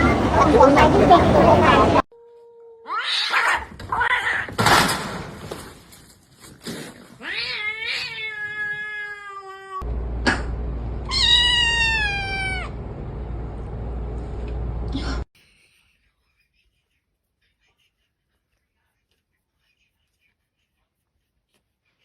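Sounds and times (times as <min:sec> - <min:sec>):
cats meowing: 0:01.6 - 0:04.5, 0:07.2 - 0:09.8, 0:11.1 - 0:12.8.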